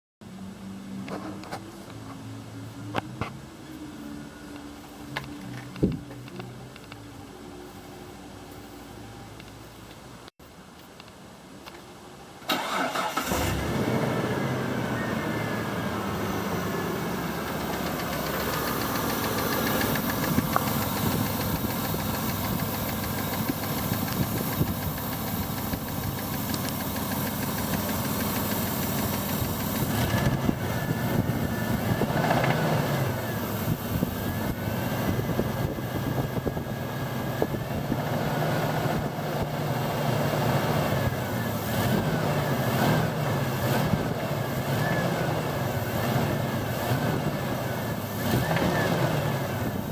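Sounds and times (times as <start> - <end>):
engine idling: 12.5 - 49.9
rapid engine knocking: 17.5 - 30.6.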